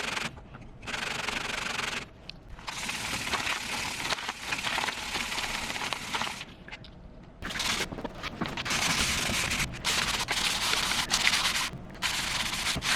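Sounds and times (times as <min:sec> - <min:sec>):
hand sanding gritty rubbing: 0:07.4 - 0:12.9.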